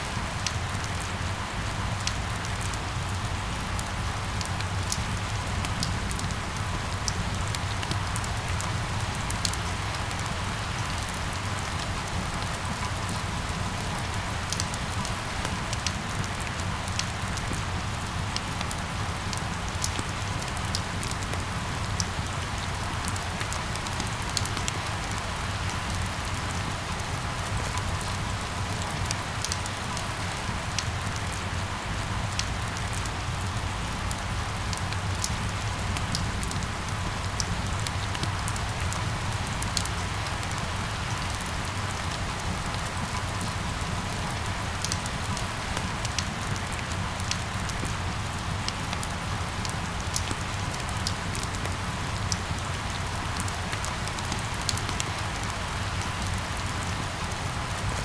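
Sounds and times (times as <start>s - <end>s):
steady rain hissing: 0.0s - 58.0s.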